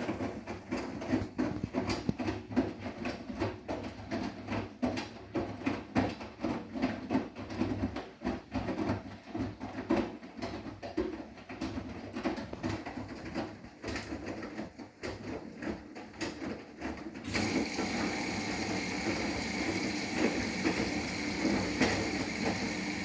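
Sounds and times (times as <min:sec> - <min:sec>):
laundry and water sloshing: 0:11.6 - 0:23.0
washing machine motor hum: 0:16.4 - 0:23.0.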